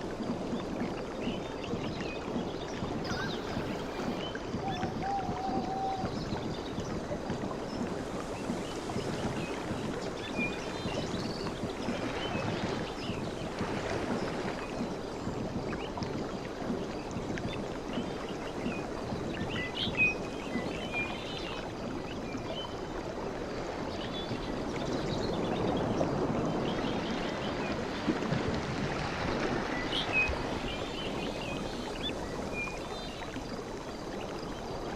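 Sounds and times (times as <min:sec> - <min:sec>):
sea waves washing: 0:02.3 - 0:15.7, 0:22.8 - 0:34.9
bird chirps: 0:03.0 - 0:06.1.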